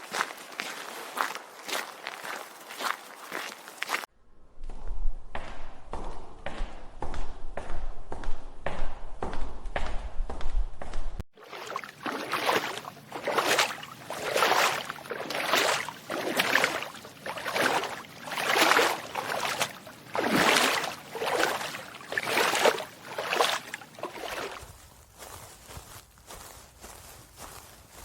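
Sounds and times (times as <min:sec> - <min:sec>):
footsteps wading through water: 0:00.0 - 0:04.1, 0:11.3 - 0:28.0.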